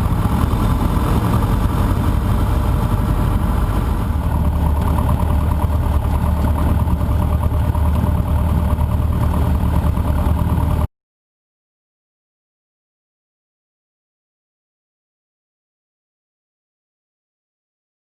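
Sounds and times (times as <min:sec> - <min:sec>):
propeller plane engine droning: 0:00.0 - 0:10.9.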